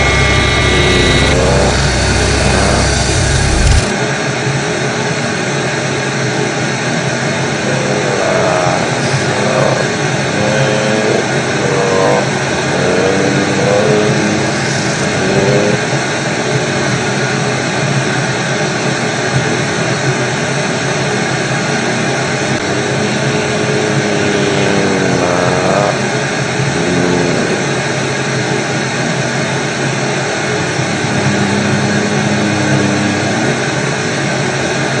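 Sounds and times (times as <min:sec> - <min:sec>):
faint wavering tones: 0:00.0 - 0:03.9
white-noise static: 0:00.0 - 0:04.0, 0:07.5 - 0:17.8.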